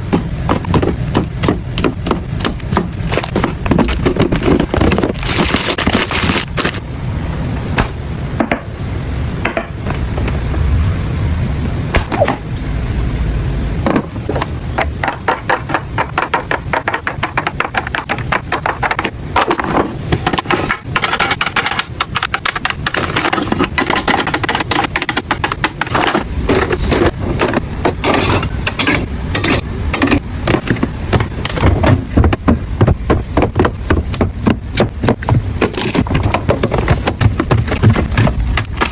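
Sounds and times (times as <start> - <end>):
jars and bottles clattering: 20.4 - 33.9.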